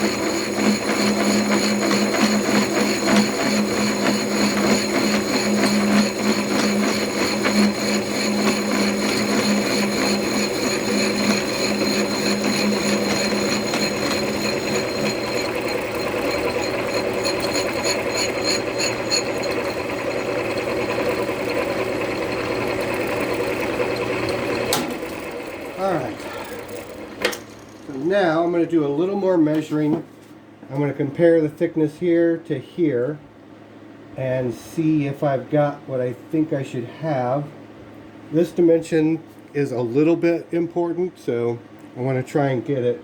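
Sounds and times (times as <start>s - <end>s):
milling machine cutting metal: 0.0s - 27.0s.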